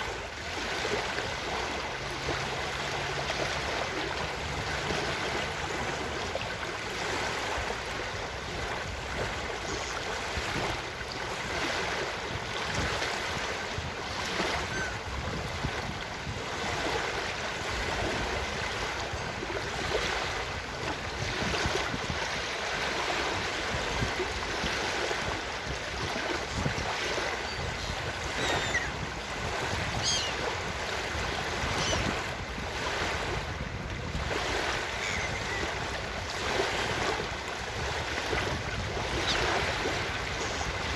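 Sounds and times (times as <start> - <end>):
ocean surf on beach: 0.0 - 40.9
faint gull calls: 14.4 - 15.1, 27.4 - 29.0, 29.7 - 30.5, 31.6 - 32.2, 34.8 - 35.9, 39.0 - 39.6.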